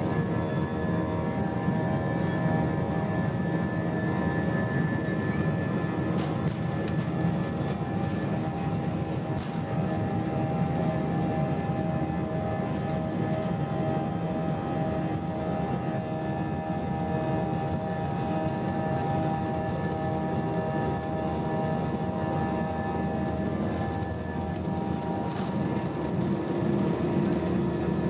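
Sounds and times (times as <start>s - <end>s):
jet engine cabin roar: 0.0s - 28.0s.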